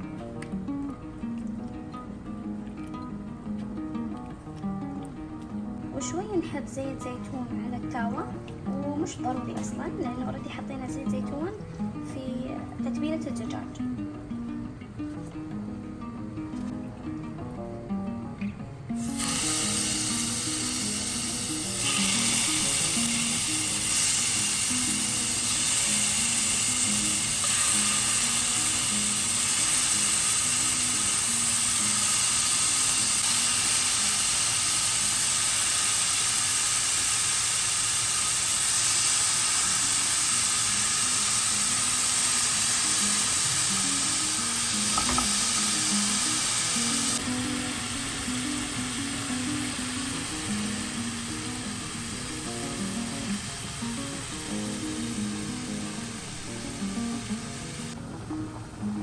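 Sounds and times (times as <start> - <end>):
chicken sizzling in a pan: 18.9 - 58.0.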